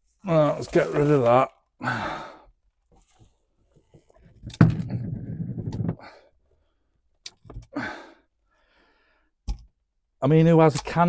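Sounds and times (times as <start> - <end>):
rustling and handling noise: 0.0 - 1.6, 2.8 - 6.0.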